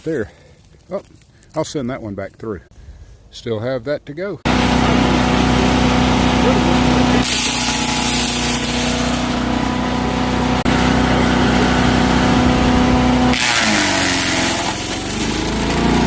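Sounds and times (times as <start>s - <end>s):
wood chipper engine running: 4.4s - 16.0s
wood being shredded: 4.5s - 16.0s.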